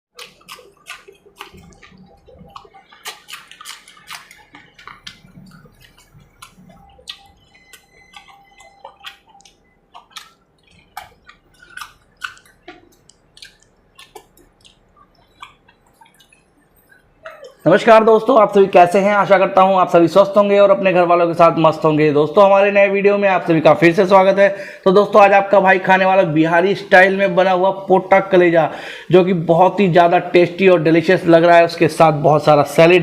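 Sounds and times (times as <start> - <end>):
wet chewing and smacking: 0.1 - 17.6.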